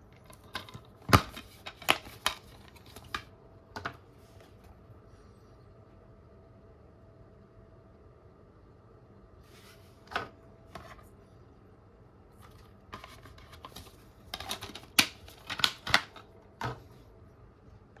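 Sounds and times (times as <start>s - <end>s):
dvd case clicking and snapping: 0.3s - 3.3s, 13.0s - 16.8s.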